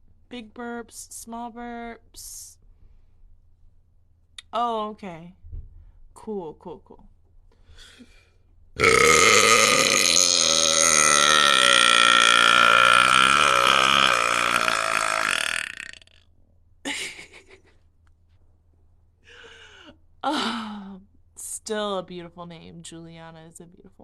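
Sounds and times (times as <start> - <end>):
woman burping: 8.8 - 16.0.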